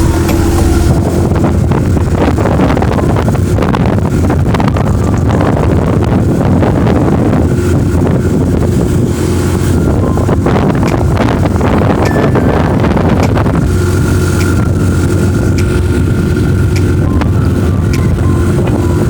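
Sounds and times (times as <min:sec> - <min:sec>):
vehicle engine and road noise: 0:00.0 - 0:19.0
wind buffeting microphone: 0:00.0 - 0:19.0.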